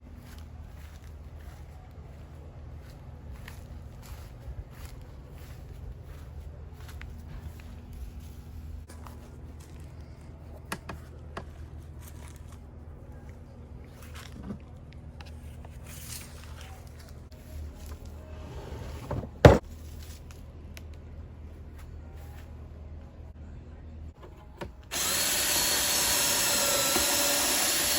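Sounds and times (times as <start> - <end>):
loud thump: 19.0 - 19.6.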